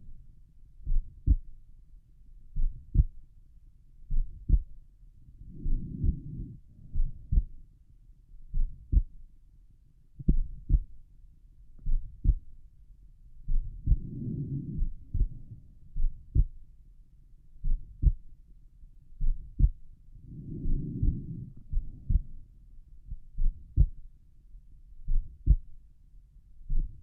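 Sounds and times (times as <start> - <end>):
heartbeat thuds: 0.8 - 1.5, 2.6 - 3.2, 4.1 - 4.8, 5.5 - 7.6, 8.5 - 9.2, 10.2 - 11.0, 11.8 - 12.5, 13.5 - 16.6, 17.6 - 18.3, 19.2 - 22.4, 23.1 - 24.1, 25.1 - 25.7, 26.7 - 27.0.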